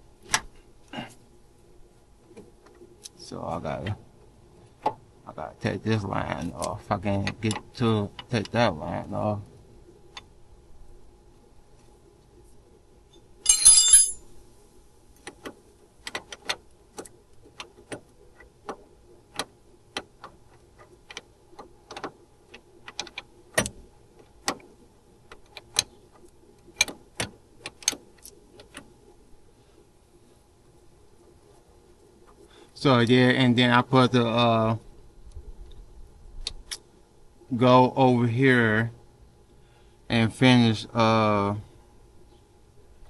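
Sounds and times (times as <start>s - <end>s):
faint steady hum: 0.0s - 43.0s
metal tools rattling: 13.4s - 14.3s.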